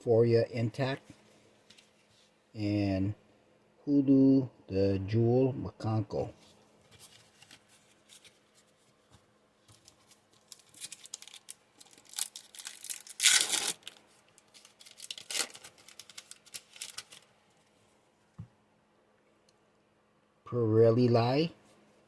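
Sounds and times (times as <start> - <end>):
foil wrapper tearing and crinkling: 9.8 - 17.3.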